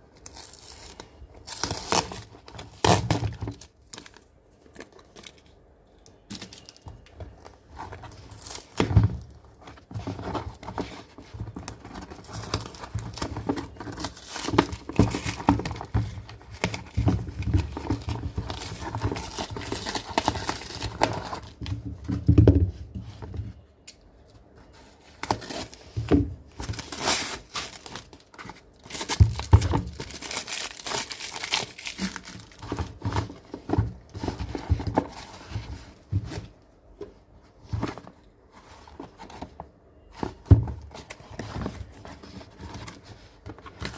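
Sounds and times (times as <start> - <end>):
wrapping crinkling and rustling: 0.0 - 22.0, 24.3 - 36.6
packaging tearing: 28.8 - 32.6.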